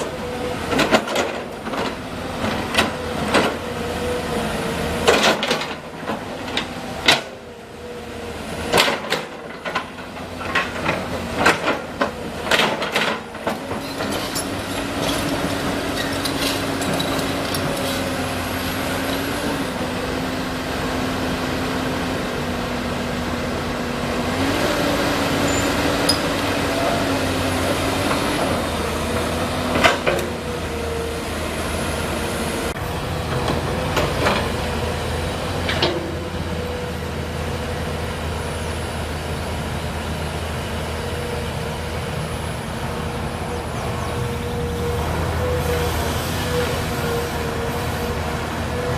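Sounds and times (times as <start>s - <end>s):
diesel engine under load: 0.0s - 48.9s.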